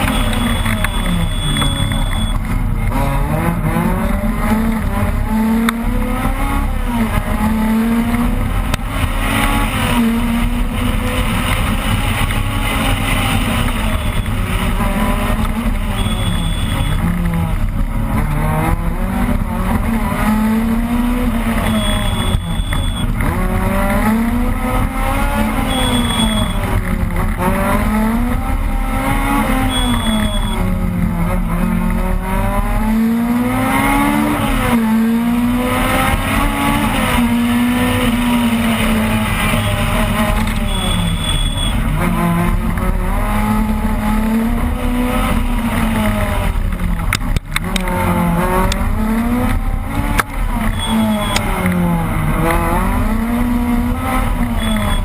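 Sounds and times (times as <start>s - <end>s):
short high beeps: 0.0s - 2.4s, 15.9s - 17.0s, 21.6s - 23.1s, 25.6s - 26.6s, 29.6s - 30.6s, 40.6s - 41.8s, 50.7s - 51.5s, 54.6s - 55.0s
car engine revving: 0.0s - 55.0s.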